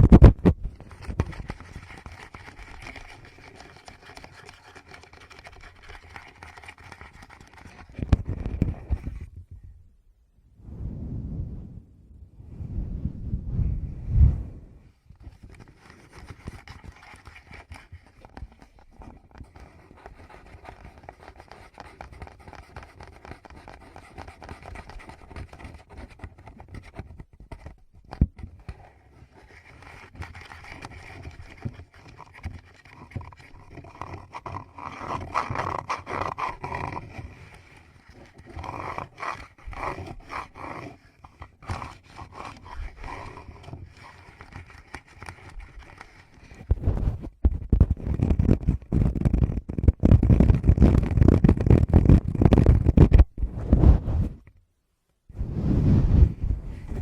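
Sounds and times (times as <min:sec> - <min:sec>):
sharp microphone taps: 0:00.0 - 0:00.8, 0:46.7 - 0:54.6
fingers rubbing on microphone: 0:00.0 - 0:09.4, 0:12.7 - 0:54.6, 0:55.3 - 0:57.0.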